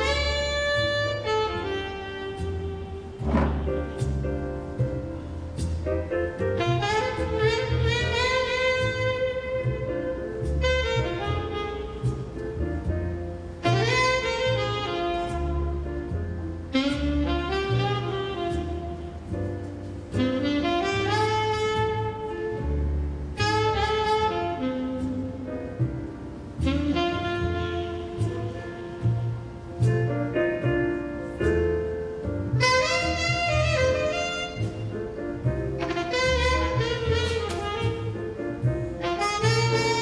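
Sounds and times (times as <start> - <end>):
sliding melody line: 0.0 - 12.9, 20.2 - 31.7, 32.5 - 40.0
low bass notes: 0.0 - 40.0.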